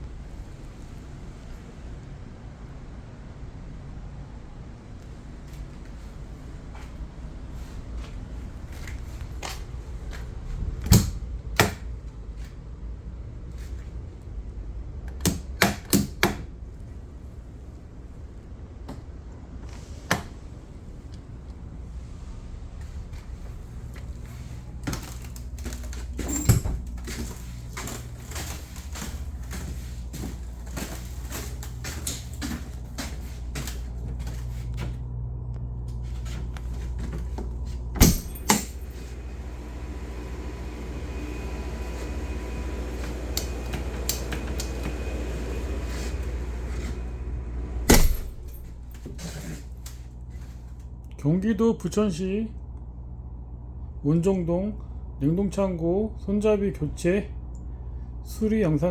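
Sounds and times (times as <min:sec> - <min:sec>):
low machine hum: 0:00.0 - 0:58.9
freezer door latch clicking and rattling: 0:47.9 - 0:49.1.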